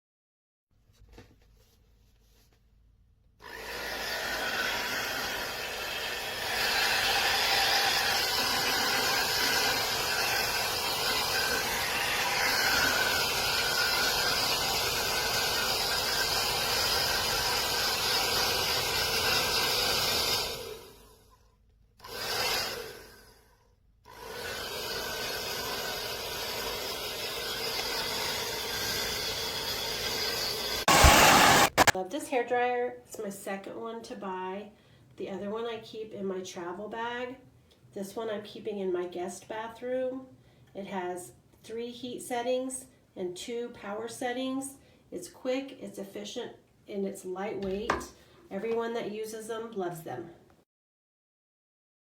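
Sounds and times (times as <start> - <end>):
hair dryer running: 3.4 - 20.9, 24.3 - 31.9.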